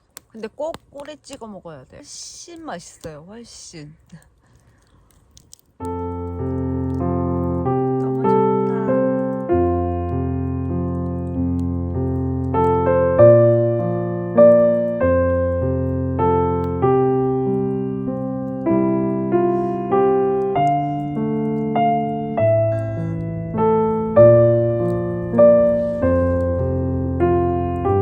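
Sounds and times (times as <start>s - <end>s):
piano music: 5.8s - 28.0s.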